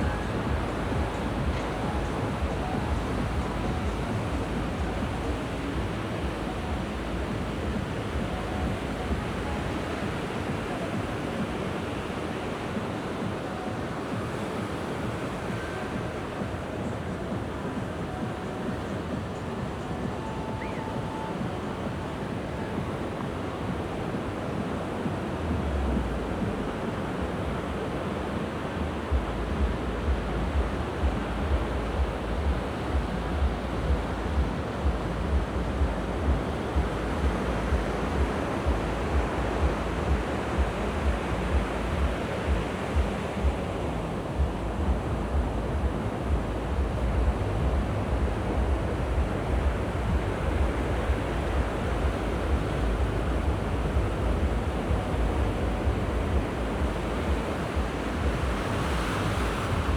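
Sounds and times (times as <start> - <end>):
waves washing onto beach: 0.0 - 59.9
wind on microphone: 0.0 - 59.9
low thumps of footsteps: 29.1 - 59.6.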